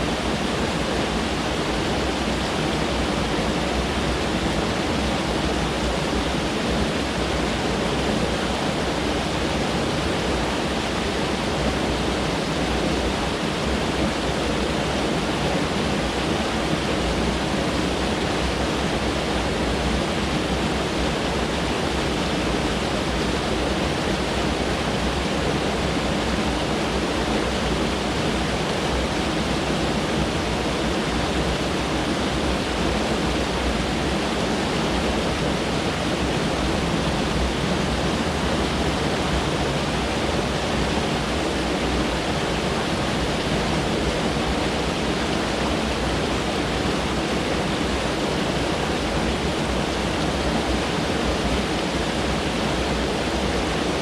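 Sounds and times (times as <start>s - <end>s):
stream rushing over rocks: 0.0s - 54.0s.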